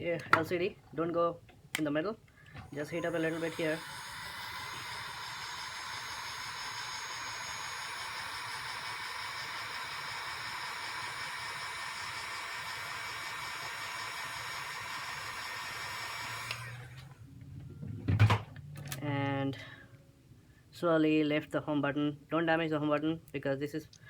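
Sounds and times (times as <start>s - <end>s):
hot-air blower hissing: 2.5s - 17.2s.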